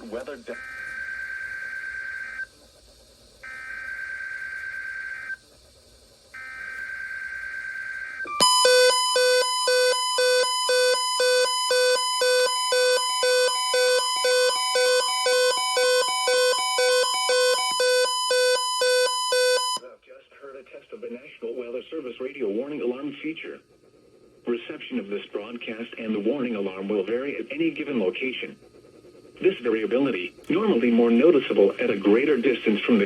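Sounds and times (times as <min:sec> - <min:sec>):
steady warning alarm tone: 0:00.1 - 0:02.5, 0:03.4 - 0:05.4, 0:06.3 - 0:19.9
pulsing beep: 0:08.2 - 0:19.8.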